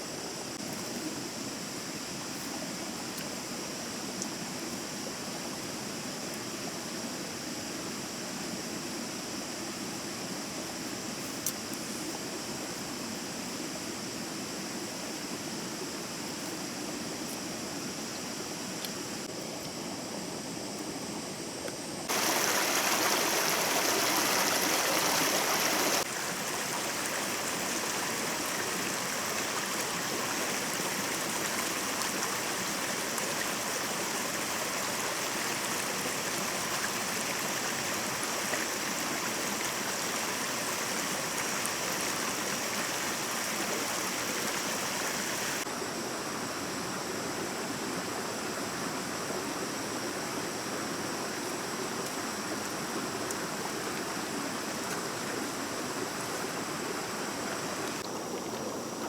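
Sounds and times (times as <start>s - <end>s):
stream water rushing: 22.0s - 59.0s.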